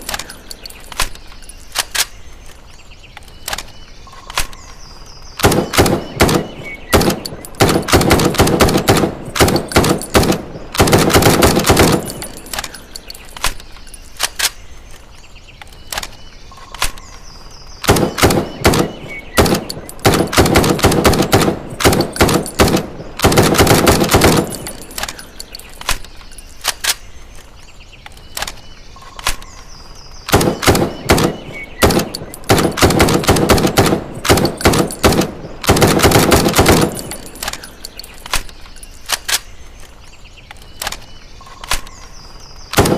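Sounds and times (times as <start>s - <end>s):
single rifle shots: 5.4s - 12.8s, 17.8s - 25.2s, 30.3s - 38.6s.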